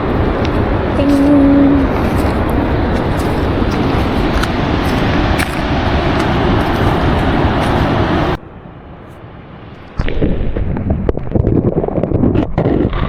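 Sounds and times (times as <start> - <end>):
waterfall roaring: 0.0 - 8.4
wind buffeting microphone: 0.0 - 13.0.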